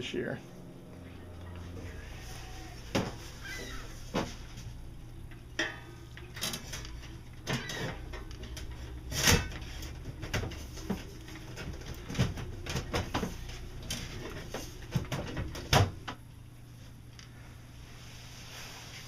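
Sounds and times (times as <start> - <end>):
knocks and metallic clatters: 2.8 - 16.2.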